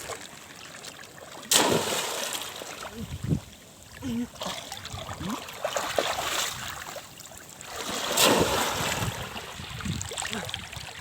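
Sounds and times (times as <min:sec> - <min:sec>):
people wading through shallow water: 0:00.0 - 0:11.0.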